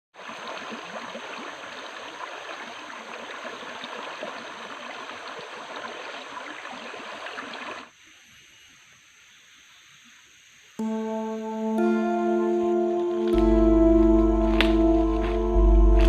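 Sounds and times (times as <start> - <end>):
river water flowing over stones: 0.2 - 7.9.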